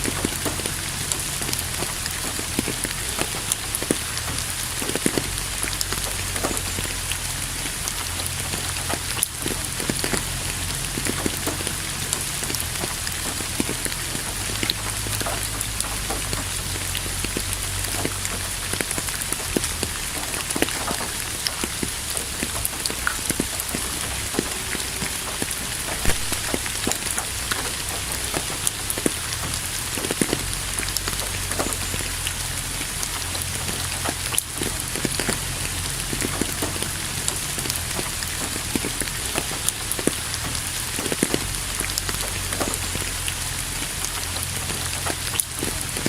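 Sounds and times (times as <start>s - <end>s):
raindrops ticking on a surface: 0.0s - 46.0s
steady rain falling: 0.0s - 46.0s.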